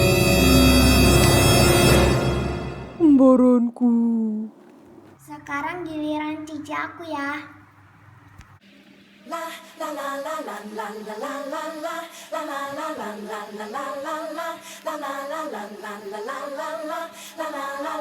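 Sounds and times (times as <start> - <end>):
pop music with singing: 9.3 - 18.0.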